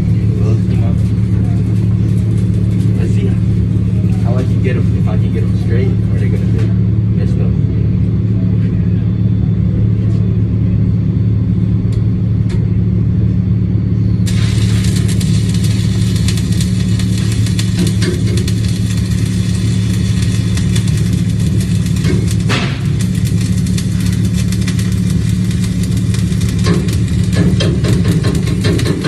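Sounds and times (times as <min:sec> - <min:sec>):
welding arc crackling hiss: 0:00.0 - 0:06.6, 0:14.2 - 0:29.0
low machine hum: 0:00.0 - 0:29.0.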